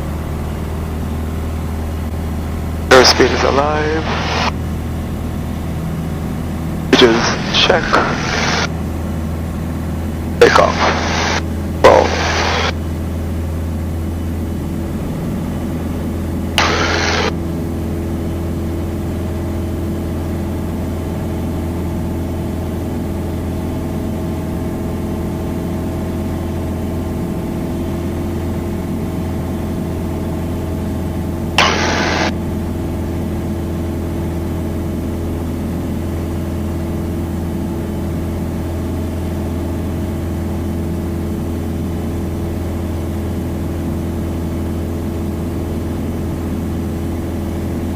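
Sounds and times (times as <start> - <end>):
aircraft engine and propeller drone: 0.0 - 47.9
bursts of radio static: 2.9 - 4.6, 6.9 - 8.7, 10.4 - 12.8, 16.6 - 17.3, 31.6 - 32.3.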